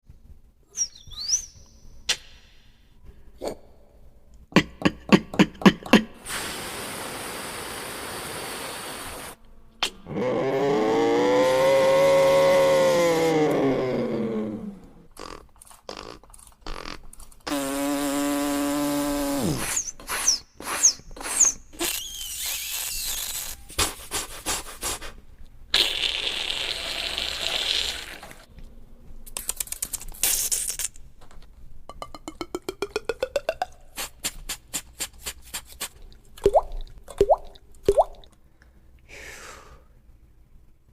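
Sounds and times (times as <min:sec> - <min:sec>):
beatboxer imitating tool noises: 0:04.5 - 0:06.5, 0:15.1 - 0:28.5, 0:29.3 - 0:31.0, 0:31.9 - 0:36.6.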